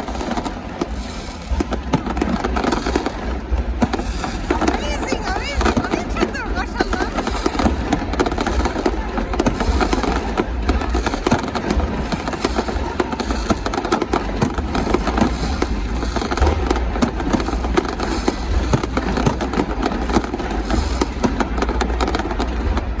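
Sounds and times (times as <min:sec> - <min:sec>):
fireworks pops and bangs: 0:00.0 - 0:23.0
voices: 0:04.2 - 0:20.8.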